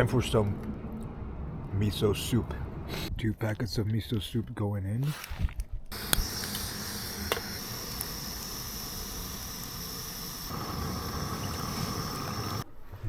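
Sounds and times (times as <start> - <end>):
gas stove burner hissing: 5.9 - 12.7.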